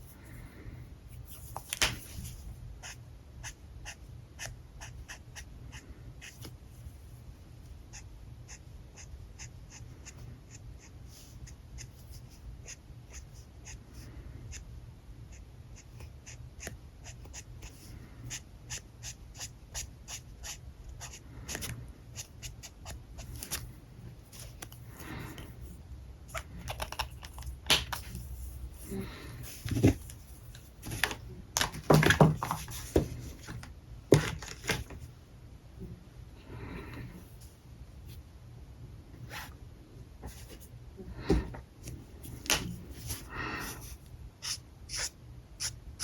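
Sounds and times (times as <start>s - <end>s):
steady low hum: 0.0s - 46.0s
marker strokes on paper: 44.4s - 45.8s.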